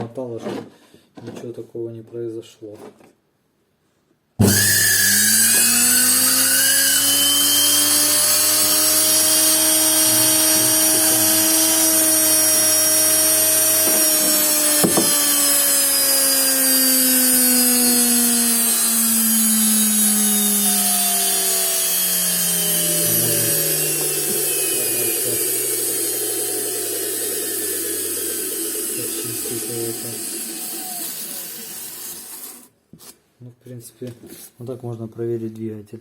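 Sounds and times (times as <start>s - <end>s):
electric motor whining: 4.4s - 32.7s.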